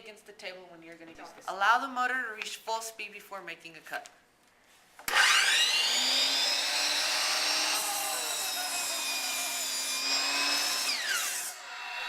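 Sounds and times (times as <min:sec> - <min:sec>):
miter saw motor whine: 0:05.1 - 0:12.0.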